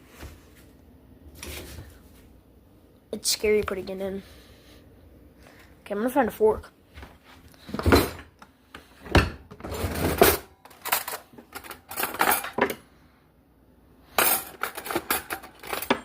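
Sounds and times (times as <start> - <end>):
metal cutlery clinking: 9.9 - 12.8, 14.2 - 16.0.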